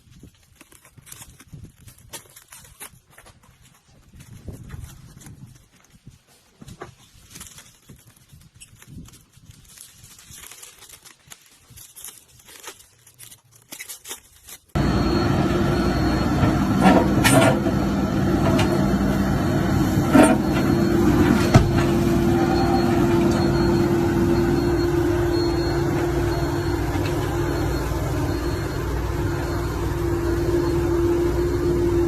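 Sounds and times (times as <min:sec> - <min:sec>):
faint clicks and crackles: 0:00.0 - 0:14.8
machine running with low hum: 0:14.8 - 0:32.0.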